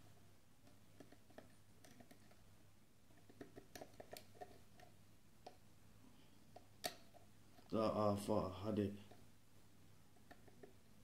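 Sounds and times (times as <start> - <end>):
low steady hum: 0.0 - 11.0
lock pick clicking and scraping: 3.2 - 4.9.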